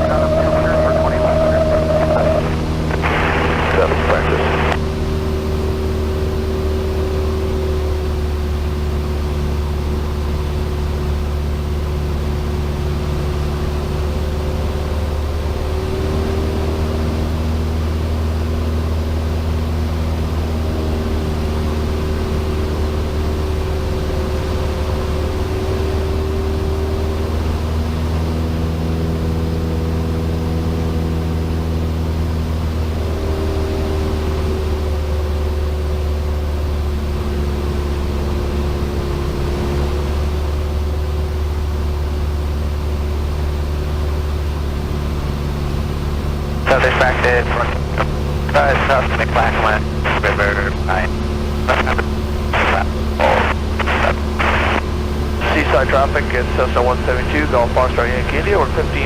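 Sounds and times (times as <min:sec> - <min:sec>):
faint steady tones: 0:00.0 - 0:04.8, 0:46.6 - 0:59.0
aircraft engine droning: 0:00.0 - 0:59.0.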